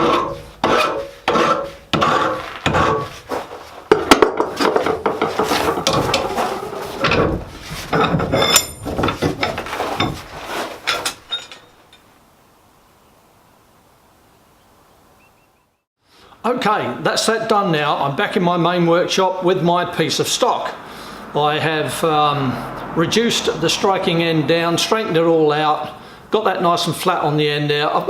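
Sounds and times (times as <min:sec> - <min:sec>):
hand file rasping on steel: 0:00.0 - 0:03.5.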